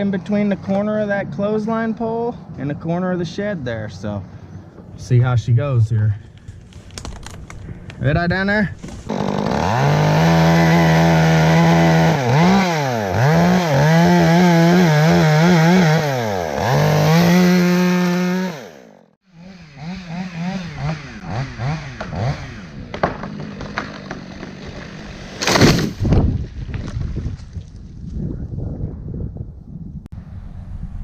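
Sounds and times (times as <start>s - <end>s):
chainsaw cutting wood: 8.8s - 26.2s.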